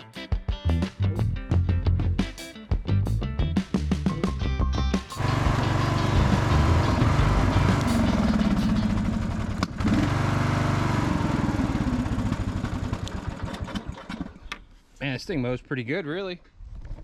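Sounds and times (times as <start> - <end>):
lawn mower engine running: 5.2 - 14.5.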